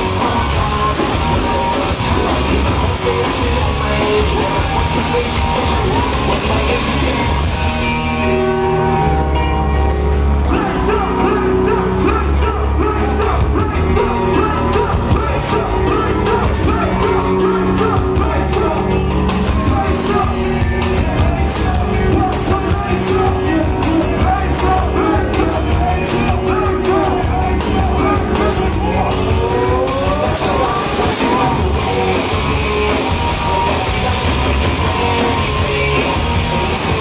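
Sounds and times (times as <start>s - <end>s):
person singing: 0.0s - 7.6s, 10.5s - 37.0s
live concert music with heavy bass: 0.0s - 37.0s.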